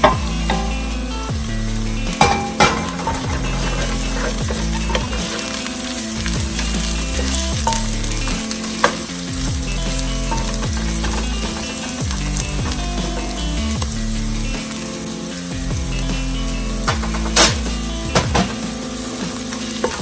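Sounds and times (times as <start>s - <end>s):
vegetables sizzling in oil: 0.0s - 20.0s
utensil knocking against pan: 2.2s - 5.6s.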